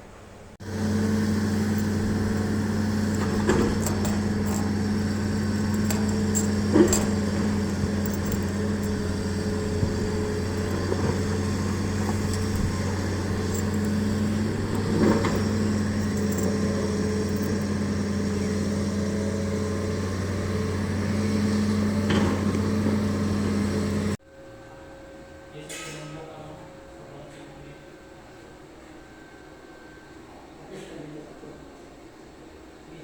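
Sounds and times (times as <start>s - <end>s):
motor humming: 0.6s - 24.2s.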